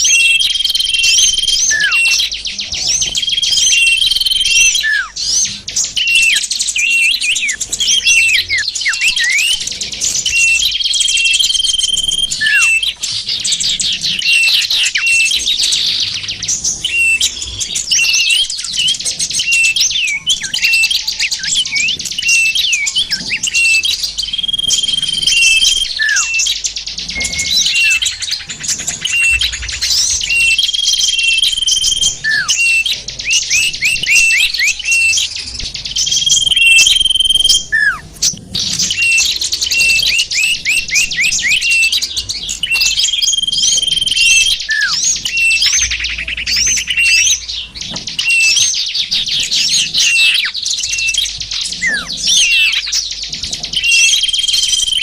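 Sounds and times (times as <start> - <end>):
held bird whistle: 0.0 - 55.0
small songbirds chirping and trilling: 0.0 - 55.0.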